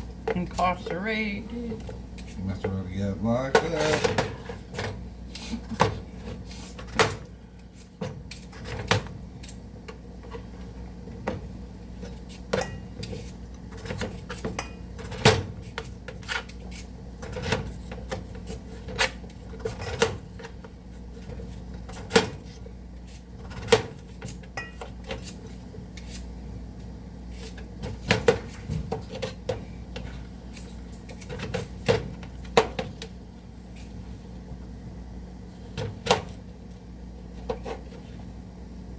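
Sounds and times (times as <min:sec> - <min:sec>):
dishes and pots clattering: 0:24.5 - 0:25.0.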